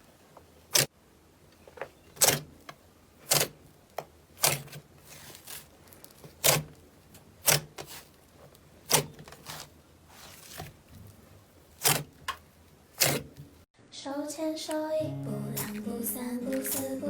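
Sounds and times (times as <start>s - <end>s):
sticky slime crackles: 3.2s - 13.6s.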